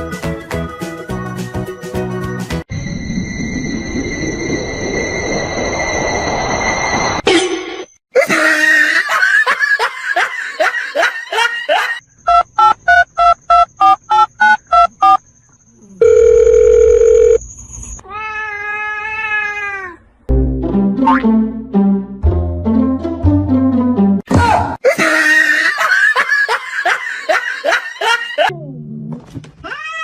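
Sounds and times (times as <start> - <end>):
music with a beat: 0.0 - 2.6
electronic beeps and tones: 12.3 - 15.2.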